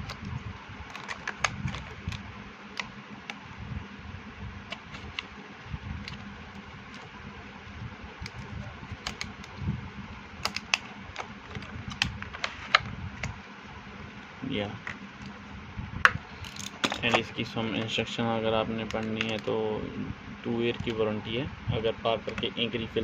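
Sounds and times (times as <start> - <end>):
fan hum: 0.0 - 23.0
gift box clicks and taps: 10.4 - 10.8.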